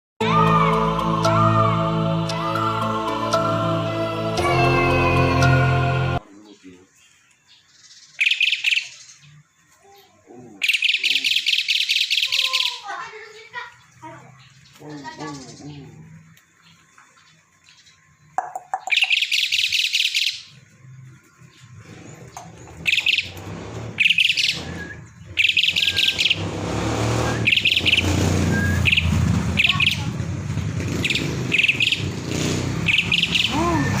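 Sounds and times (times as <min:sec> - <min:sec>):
bird trilled chattering calls: 0:07.7 - 0:09.4, 0:10.6 - 0:13.6, 0:17.7 - 0:20.6, 0:21.9 - 0:23.4, 0:24.0 - 0:26.4, 0:27.4 - 0:30.2, 0:30.9 - 0:34.0.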